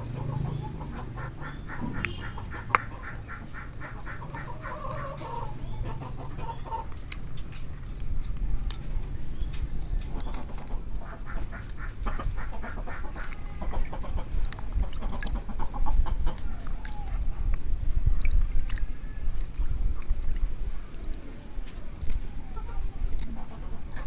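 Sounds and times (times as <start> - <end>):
hens clucking: 0.0 - 7.1, 10.0 - 17.5, 22.4 - 24.0.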